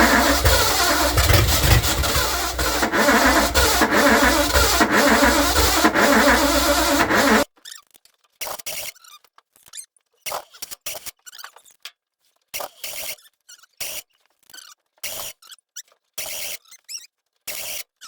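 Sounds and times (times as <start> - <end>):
car engine running: 0.0 - 7.4
short squeaks and rubbing: 0.0 - 7.4.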